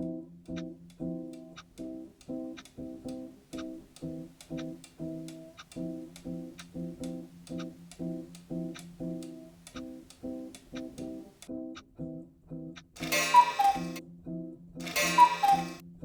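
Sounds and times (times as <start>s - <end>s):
clock ticking: 0.5s - 11.5s, 12.8s - 14.0s, 14.8s - 15.8s
plucked-string music: 13.0s - 14.0s, 14.8s - 15.8s.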